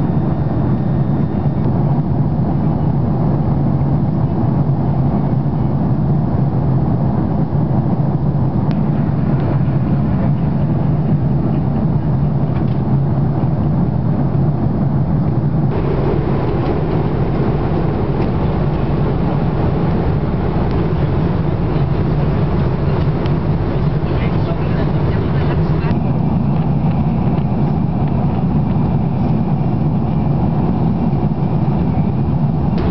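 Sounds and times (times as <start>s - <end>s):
aircraft engines droning: 0.0s - 32.9s
air rushing past fuselage: 15.6s - 31.6s.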